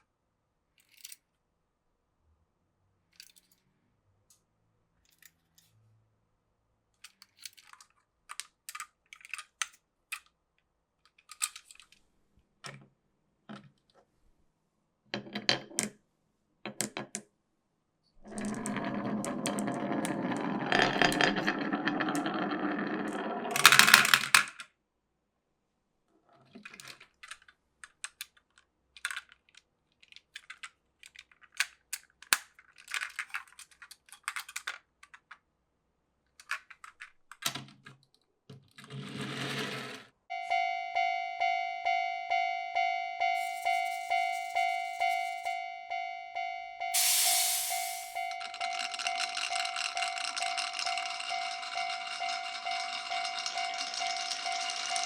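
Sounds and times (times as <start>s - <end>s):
marbles clicking in marble run: 18.3s - 24.5s, 47.0s - 55.0s
marbles rolling rattle: 18.3s - 24.5s, 43.4s - 45.5s, 47.0s - 55.0s.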